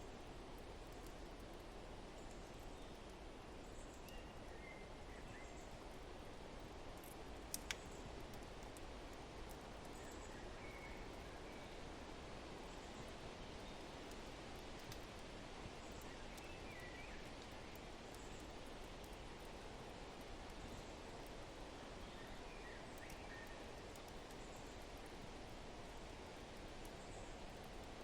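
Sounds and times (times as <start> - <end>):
log fire crackling pops: 6.6 - 10.0, 14.0 - 15.3.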